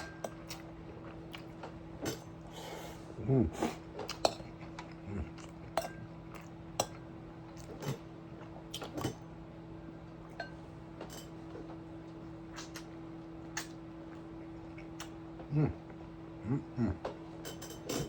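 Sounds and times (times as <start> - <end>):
steady low hum: 0.0 - 18.0
utensils clinking on dishes: 5.7 - 6.1, 10.3 - 11.4, 17.4 - 18.0.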